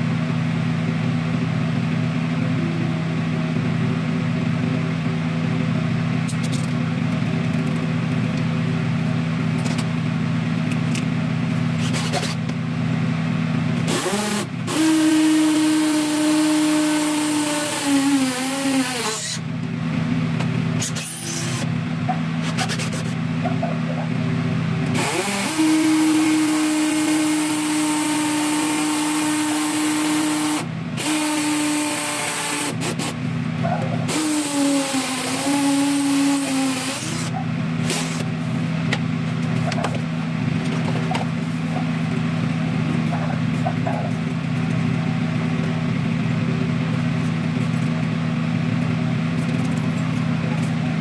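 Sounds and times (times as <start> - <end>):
power drill whining: 13.9 - 19.4, 20.8 - 21.7, 24.9 - 33.2, 34.0 - 38.3.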